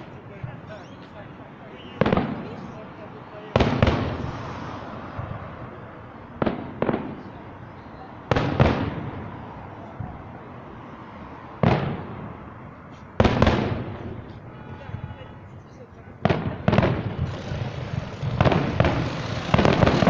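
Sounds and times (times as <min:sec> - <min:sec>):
fireworks bangs with rumbling echo: 0:01.9 - 0:10.3, 0:11.6 - 0:12.5, 0:13.1 - 0:14.4, 0:16.1 - 0:20.0.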